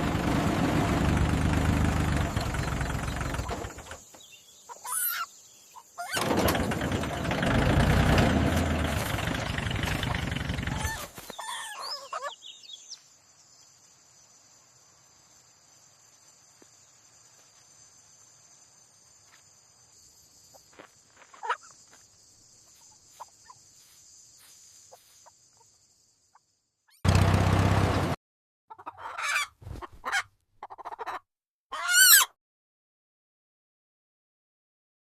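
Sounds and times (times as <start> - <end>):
crickets chirping: 2.3 - 6.2, 8.6 - 26.9
chicken clucking: 28.7 - 32.2.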